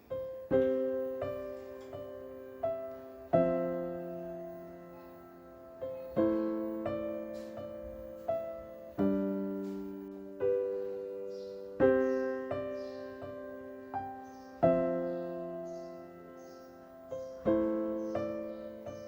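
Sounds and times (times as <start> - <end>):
slow piano chords: 0.0 - 19.0.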